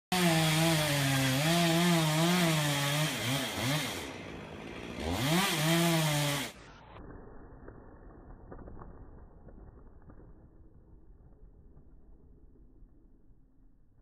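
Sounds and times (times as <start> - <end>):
chainsaw running at high revs: 0.1 - 6.7.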